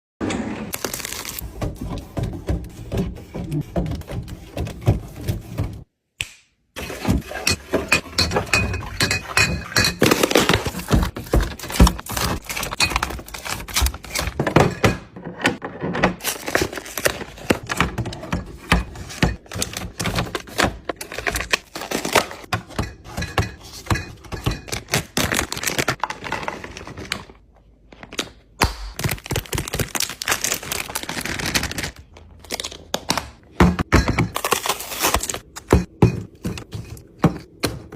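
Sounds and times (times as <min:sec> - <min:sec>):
containers knocking and clinking: 0:06.8 - 0:15.6, 0:35.5 - 0:37.9.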